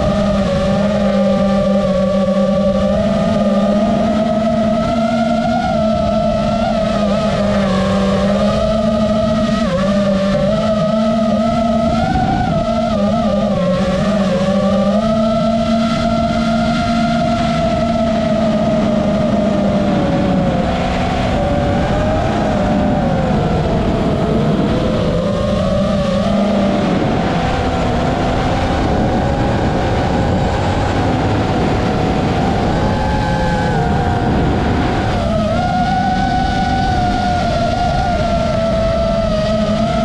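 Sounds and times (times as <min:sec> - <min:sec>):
quadcopter motors whining: 0:00.0 - 0:40.0.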